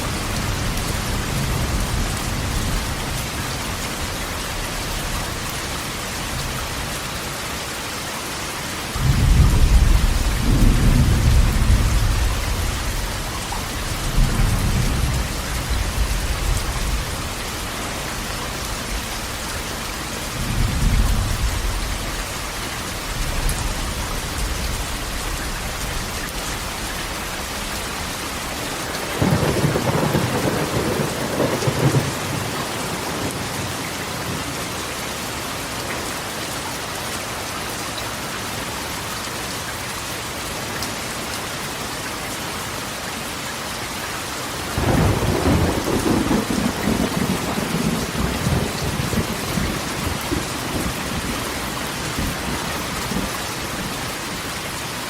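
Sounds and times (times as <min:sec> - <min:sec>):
rain on a metal roof: 0:00.0 - 0:55.0
thunder rumbling: 0:09.0 - 0:19.6, 0:27.0 - 0:34.7, 0:44.8 - 0:54.0.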